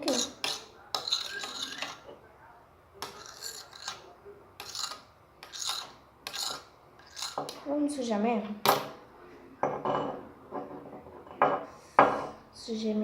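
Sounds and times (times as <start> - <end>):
spoon scraping container: 0.0 - 2.1, 3.0 - 7.6.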